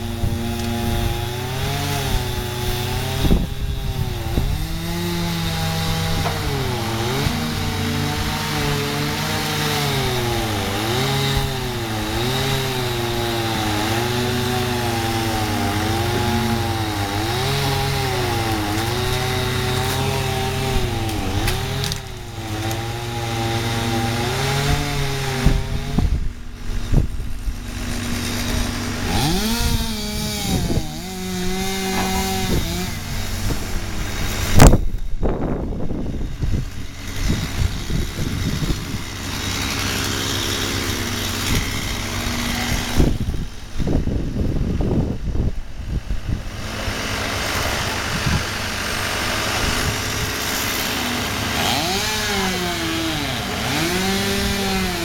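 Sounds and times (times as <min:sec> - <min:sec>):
chainsaw cutting wood: 0:00.0 - 0:55.0
loud thud: 0:31.8 - 0:32.6.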